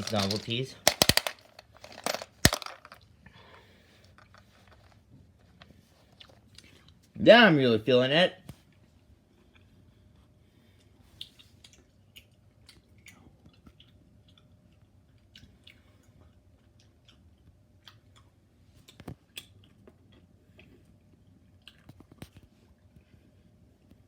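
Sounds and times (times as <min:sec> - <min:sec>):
gum chewing: 0:11.2 - 0:20.8, 0:21.5 - 0:22.4.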